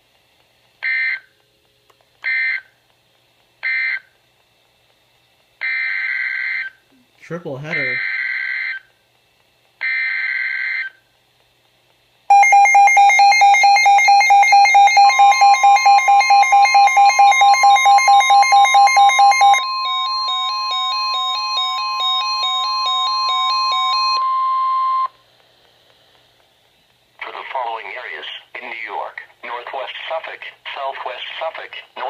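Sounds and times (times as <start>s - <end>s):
steady long alarm tone: 5.7s - 6.7s, 7.7s - 8.8s, 9.9s - 10.9s, 12.3s - 25.1s
fast electronic beeping: 12.3s - 20.9s.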